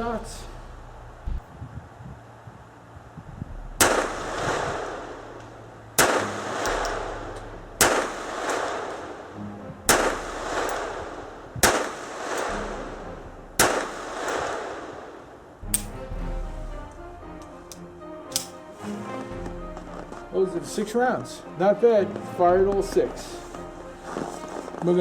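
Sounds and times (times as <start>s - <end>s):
sharp crack: 3.5s - 18.7s, 22.7s - 25.0s
pistol shots with echo: 3.8s - 16.0s.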